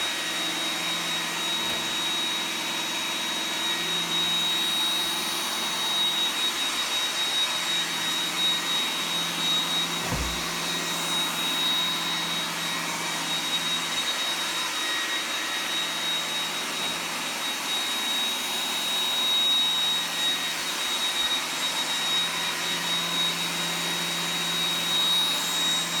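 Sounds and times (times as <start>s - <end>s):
robot vacuum cleaner whirring: 0.0s - 26.0s
low thump: 10.0s - 10.6s.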